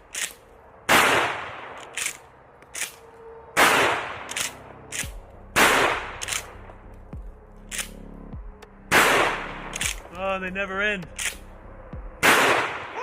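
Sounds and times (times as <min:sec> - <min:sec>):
shotgun pump racking clicks: 0:00.0 - 0:00.5, 0:01.8 - 0:03.0, 0:04.3 - 0:05.3, 0:06.2 - 0:06.6, 0:07.7 - 0:08.0, 0:09.7 - 0:10.1, 0:11.1 - 0:11.5
shotgun shots: 0:00.1 - 0:02.2, 0:03.6 - 0:06.6, 0:08.9 - 0:10.1, 0:12.2 - 0:13.0.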